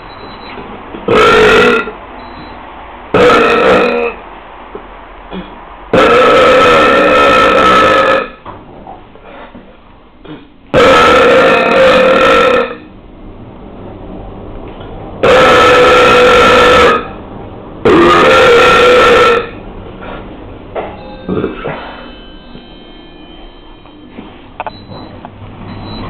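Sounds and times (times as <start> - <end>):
person burping loudly: 1.1 - 2.0, 3.2 - 4.2, 5.3 - 8.4, 10.2 - 12.9, 15.2 - 17.2, 17.8 - 19.6, 21.3 - 22.0.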